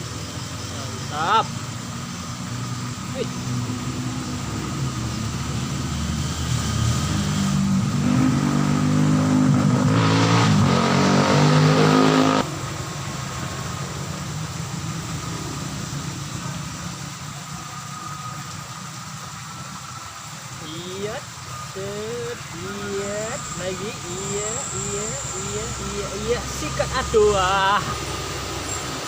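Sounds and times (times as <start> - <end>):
vehicle engine revving up: 0.0 - 12.9, 20.6 - 29.0.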